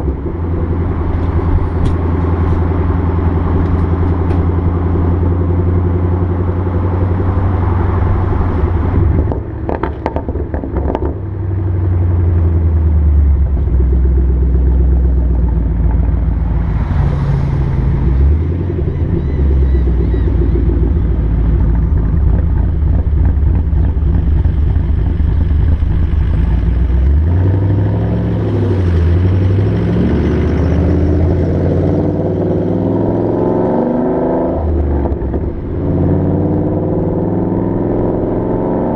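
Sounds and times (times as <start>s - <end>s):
car engine running: 0.0s - 33.8s
exhaust crackles and pops: 9.1s - 11.2s, 21.6s - 27.2s.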